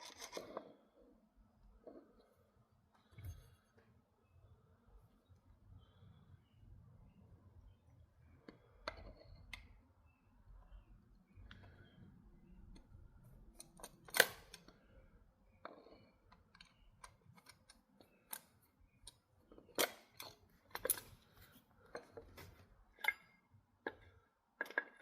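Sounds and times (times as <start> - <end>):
metal rifle parts clicking: 13.5 - 14.8, 15.7 - 24.0.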